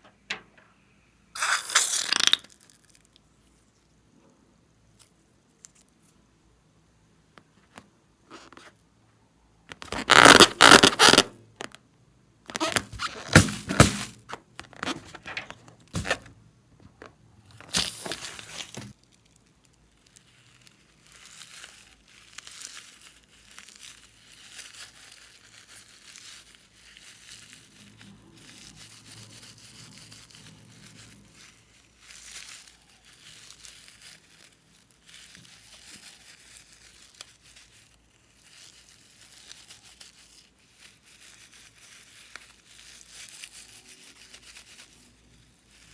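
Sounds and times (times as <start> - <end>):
slime crackling and tearing: 9.7 - 11.8, 12.5 - 16.3, 17.6 - 45.9.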